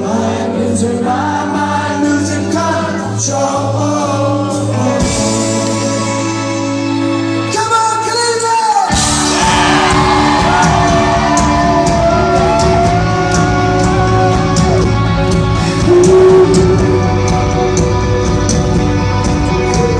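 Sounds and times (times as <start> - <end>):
full band with drum beat: 4.7 - 6.6, 7.5 - 19.9
person singing: 8.2 - 17.9, 19.2 - 19.9
sustained chords: 14.9 - 19.6.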